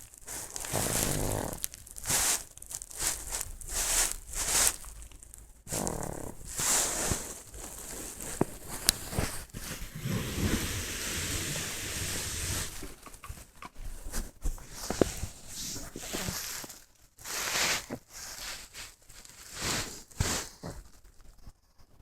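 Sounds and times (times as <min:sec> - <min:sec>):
dog snoring and snuffling: 0:00.6 - 0:01.7, 0:05.7 - 0:12.8.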